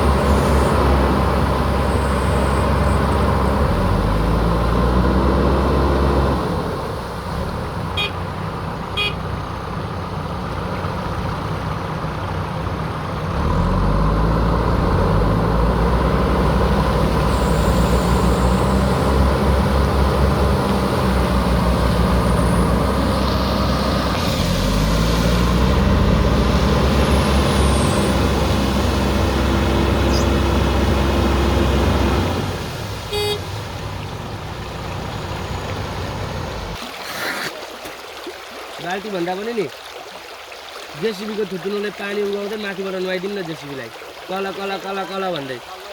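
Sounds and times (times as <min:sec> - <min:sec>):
diesel engine revving: 0:00.0 - 0:09.7, 0:12.2 - 0:36.8.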